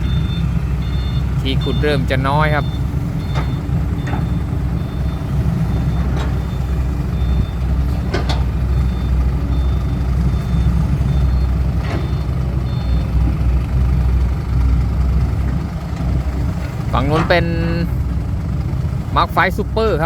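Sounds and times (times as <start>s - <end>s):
reversing alarm beeping: 0.0s - 14.6s
diesel truck engines running: 0.0s - 20.0s.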